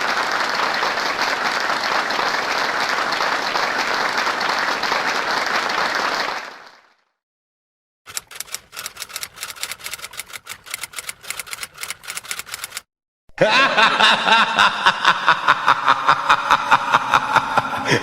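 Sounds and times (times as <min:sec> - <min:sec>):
typewriter keys clacking: 0:08.1 - 0:12.8.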